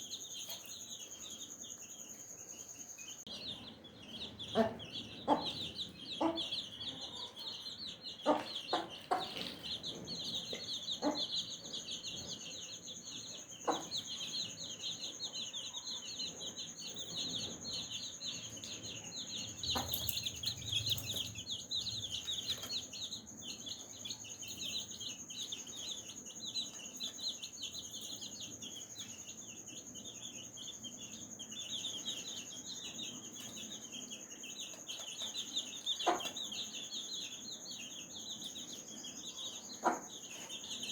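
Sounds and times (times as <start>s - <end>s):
baby chicks peeping: 0.0s - 40.9s
hen clucking: 4.4s - 7.3s, 8.2s - 9.6s.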